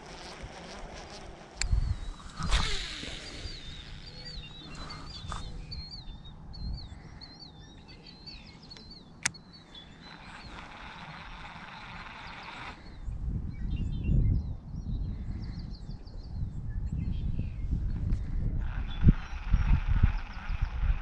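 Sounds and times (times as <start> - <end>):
songbird warbling: 1.6 - 13.1.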